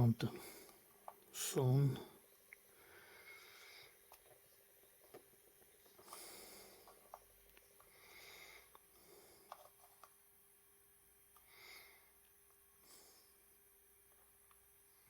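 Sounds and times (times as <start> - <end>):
breathing through the nose: 6.0 - 7.1, 7.8 - 9.6.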